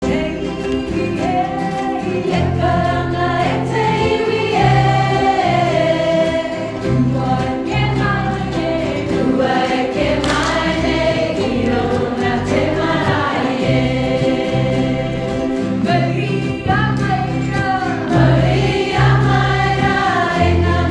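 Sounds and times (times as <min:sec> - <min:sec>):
group of voices singing: 0:00.0 - 0:20.9
held bass notes: 0:00.0 - 0:20.9
instrumental backing: 0:00.0 - 0:20.9.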